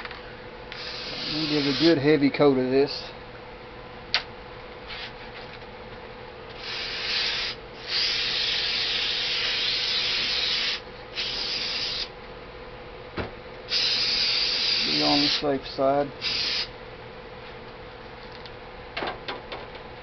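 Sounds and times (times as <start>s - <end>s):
aerosol can spraying: 0.8s - 2.0s, 6.6s - 12.1s, 13.7s - 15.5s, 16.2s - 16.7s.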